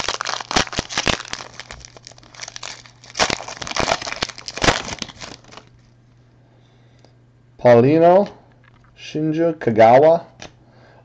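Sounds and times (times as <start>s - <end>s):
trading cards crinkling and clicking: 0.0s - 5.7s.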